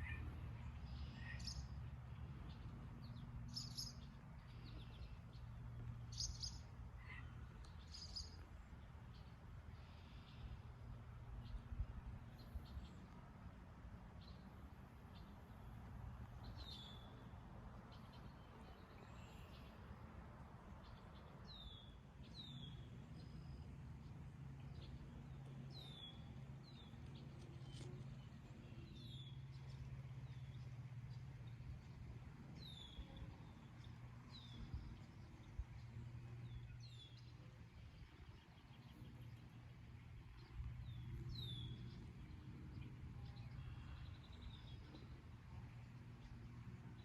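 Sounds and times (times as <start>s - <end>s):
faint low hum: 0.0s - 47.0s
songbird chirping: 20.6s - 47.0s.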